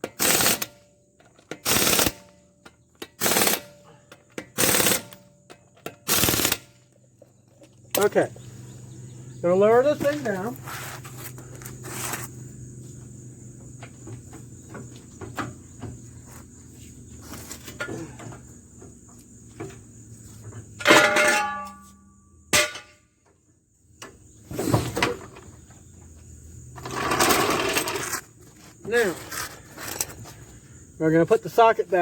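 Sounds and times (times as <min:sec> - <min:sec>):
high insect drone: 0:00.2 - 0:20.9, 0:21.6 - 0:32.0
loud metal clank: 0:20.8 - 0:21.8.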